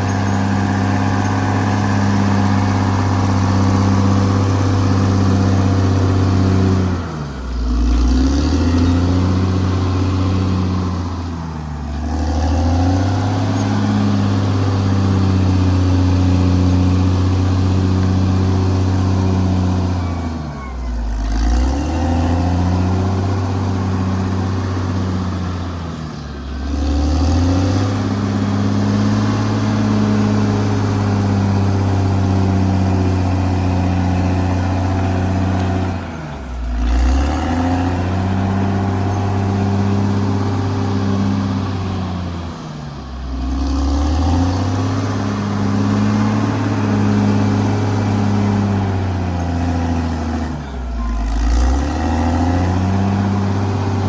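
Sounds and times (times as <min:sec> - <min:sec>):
bulldozer diesel engine running: 0:00.0 - 0:54.0.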